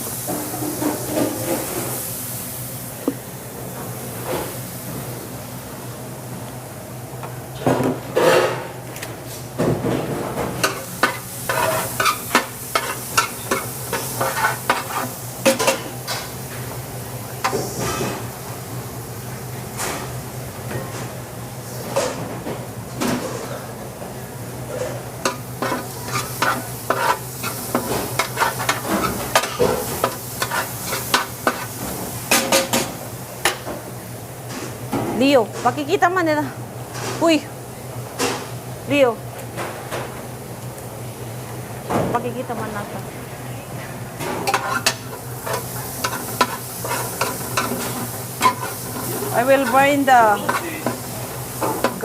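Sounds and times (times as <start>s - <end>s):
chicken sizzling in a pan: 10.6s - 18.0s, 25.2s - 33.2s, 44.4s - 52.0s
utensil scraping a pan: 25.3s - 31.7s, 44.4s - 52.0s.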